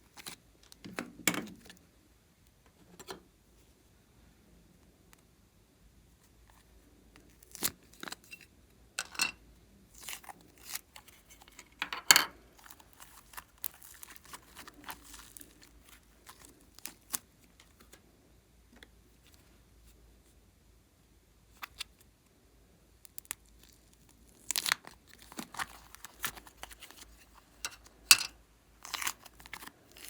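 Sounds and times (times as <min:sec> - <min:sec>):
slime clicking and crackling: 0:12.6 - 0:17.8, 0:23.1 - 0:27.1, 0:28.8 - 0:30.0.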